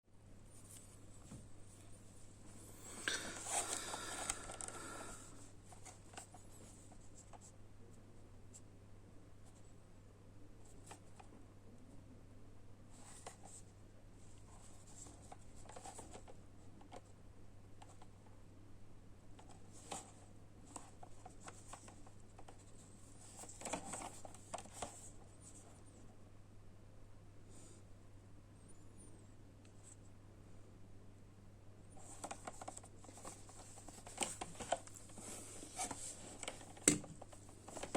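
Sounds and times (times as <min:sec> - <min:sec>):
faint low hum: 0:00.1 - 0:37.9
cardboard rustling and scraping: 0:03.3 - 0:06.8, 0:32.0 - 0:37.9.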